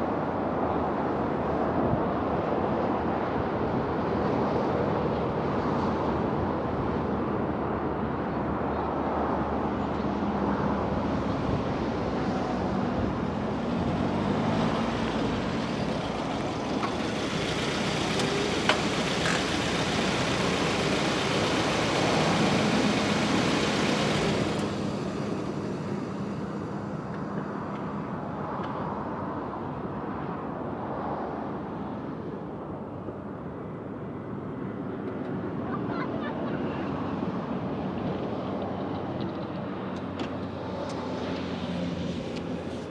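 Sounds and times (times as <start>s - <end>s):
road noise: 0.0s - 42.9s
car engine running: 15.2s - 26.9s.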